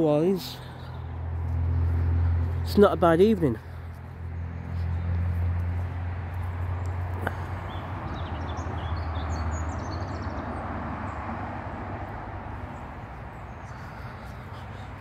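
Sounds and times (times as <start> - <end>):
passing vehicle rumble: 0.0 - 15.0
small birds chirping: 0.1 - 15.0.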